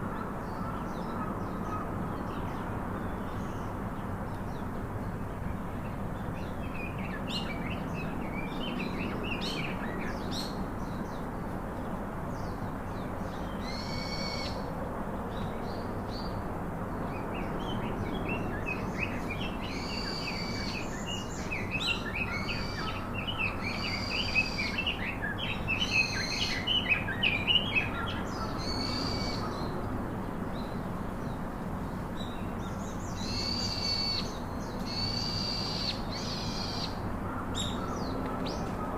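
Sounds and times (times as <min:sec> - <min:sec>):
bird long call: 0:13.6 - 0:14.6, 0:33.2 - 0:38.9.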